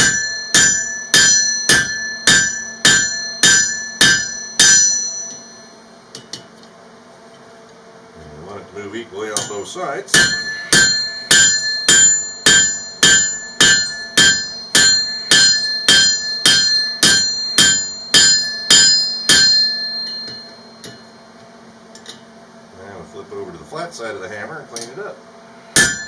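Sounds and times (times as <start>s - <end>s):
hammer striking steel on anvil: 0.0s - 6.5s, 9.4s - 21.3s, 25.7s - 26.0s.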